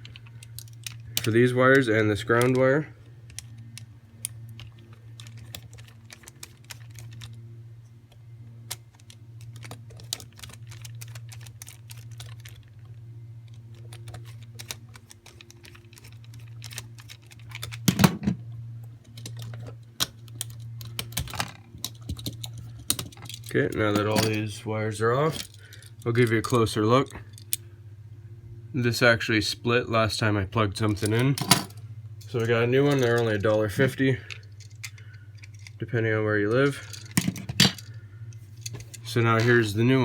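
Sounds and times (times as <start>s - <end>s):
wires being unhooked: 0.0s - 2.6s, 3.2s - 7.4s, 8.1s - 24.4s, 30.9s - 35.8s
steady low hum: 0.0s - 40.0s.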